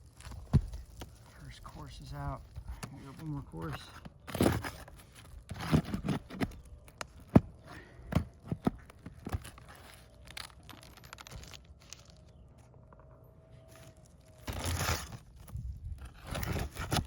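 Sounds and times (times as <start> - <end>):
scraping and handling: 2.4 - 17.0
shingles snapping and tearing: 3.2 - 12.4, 13.8 - 17.0.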